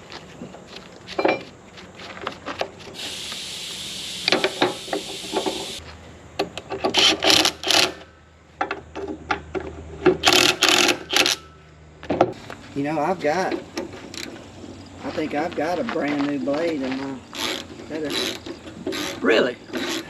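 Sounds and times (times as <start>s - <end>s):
steady hiss: 2.8s - 6.2s.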